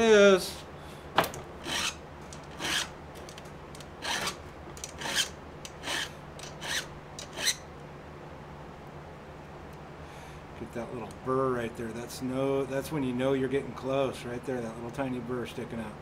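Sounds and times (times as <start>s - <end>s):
file rasping on chainsaw chain: 1.6s - 2.0s, 2.6s - 2.9s, 4.0s - 7.6s.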